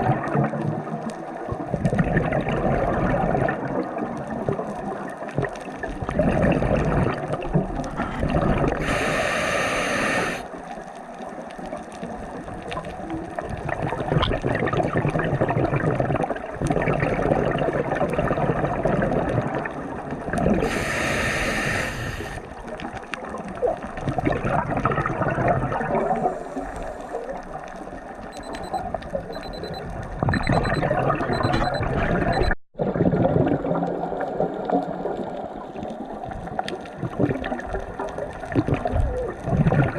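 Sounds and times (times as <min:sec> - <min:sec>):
water sloshing and gurgling: 0:00.0 - 0:09.0, 0:10.5 - 0:20.8, 0:21.9 - 0:39.9
hissing splashes: 0:06.1 - 0:10.6, 0:20.4 - 0:23.6, 0:24.2 - 0:28.8.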